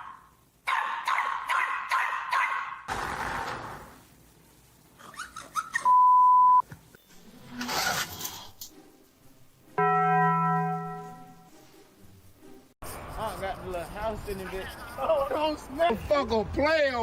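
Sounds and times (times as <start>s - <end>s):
electronic beep: 5.9s - 6.6s.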